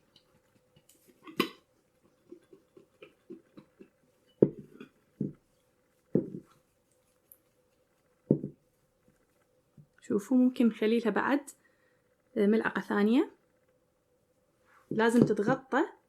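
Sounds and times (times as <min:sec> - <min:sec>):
faint steady hum: 0:00.0 - 0:16.0
heavy thumps of bowls: 0:02.3 - 0:05.5, 0:06.1 - 0:06.6, 0:08.2 - 0:08.6, 0:14.9 - 0:15.7.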